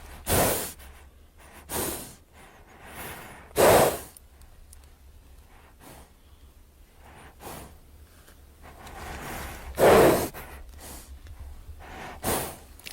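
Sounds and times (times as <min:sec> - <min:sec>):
horse snorting: 0:03.6 - 0:04.1, 0:08.7 - 0:11.1, 0:11.8 - 0:12.6.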